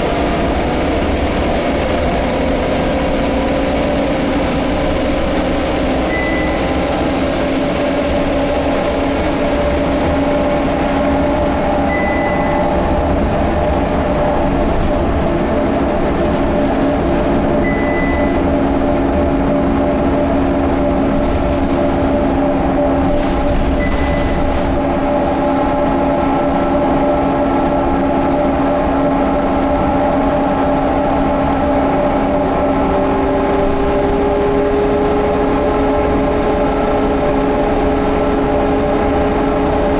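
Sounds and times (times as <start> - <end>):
bus drivetrain whine: 0.0 - 39.9
short high beep: 6.0 - 7.0, 11.9 - 12.8, 17.6 - 18.5, 23.8 - 24.5
high-pitched whistle: 6.1 - 7.0, 11.9 - 12.8.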